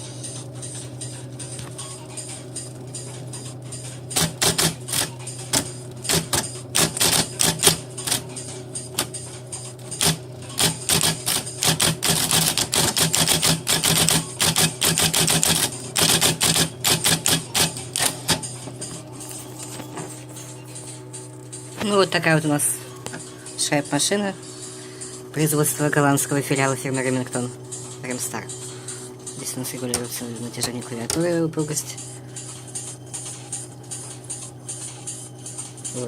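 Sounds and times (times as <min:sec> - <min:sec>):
typewriter motor hum: 0:00.0 - 0:21.6.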